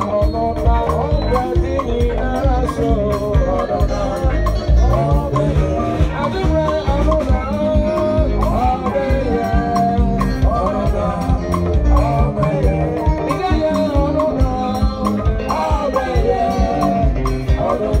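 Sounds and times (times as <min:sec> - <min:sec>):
drums and percussion beat: 0:00.0 - 0:18.0
live band playing gospel music: 0:00.0 - 0:18.0
person singing melody: 0:00.0 - 0:18.0.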